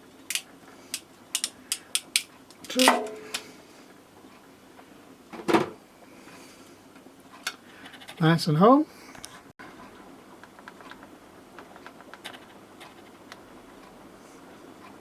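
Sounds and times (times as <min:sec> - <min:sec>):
crimp connectors clacking: 0:00.3 - 0:03.4
crimping tool clicks: 0:00.3 - 0:03.4.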